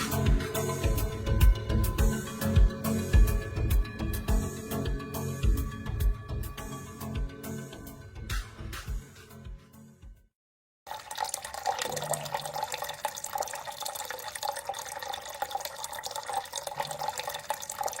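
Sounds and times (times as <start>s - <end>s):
fountain water trickling: 10.9s - 18.0s.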